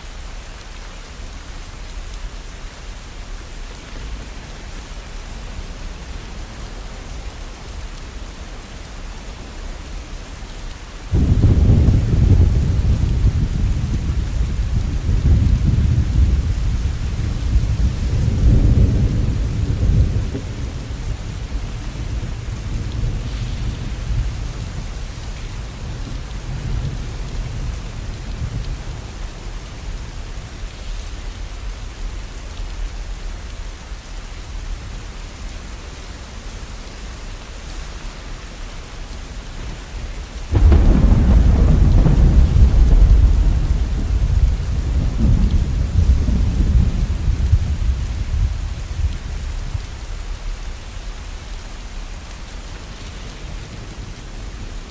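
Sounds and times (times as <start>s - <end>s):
steady rain: 0.0s - 54.9s
thunder rumbling: 11.1s - 31.5s, 39.9s - 50.2s.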